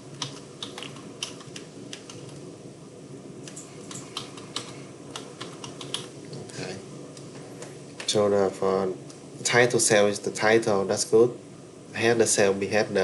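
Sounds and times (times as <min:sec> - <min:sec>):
computer keyboard typing: 0:00.2 - 0:02.4, 0:03.5 - 0:06.1.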